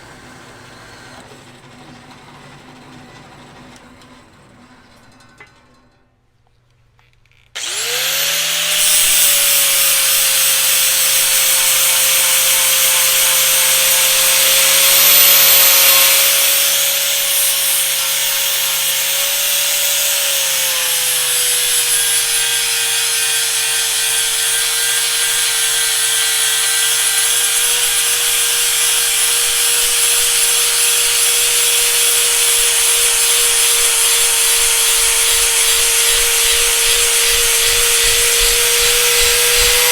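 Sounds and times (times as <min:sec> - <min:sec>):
bandsaw cutting steel: 0:07.6 - 0:39.9.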